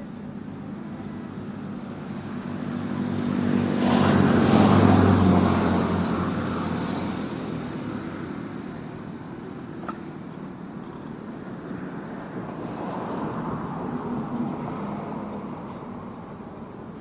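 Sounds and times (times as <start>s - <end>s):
vehicle passing by: 1.4s - 9.0s, 11.6s - 16.6s.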